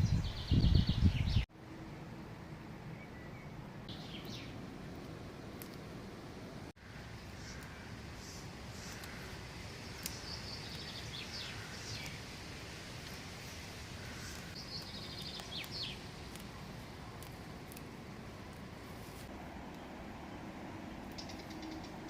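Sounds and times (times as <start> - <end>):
songbird singing trills: 0.0 - 1.4, 2.9 - 4.6, 6.8 - 12.3, 14.0 - 16.1, 20.9 - 22.0
steady background hiss: 1.6 - 22.0.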